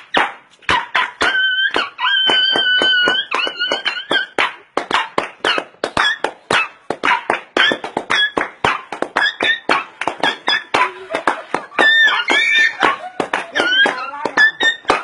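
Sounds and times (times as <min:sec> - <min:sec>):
dog yelping and whining: 0:00.7 - 0:04.5, 0:09.2 - 0:10.8.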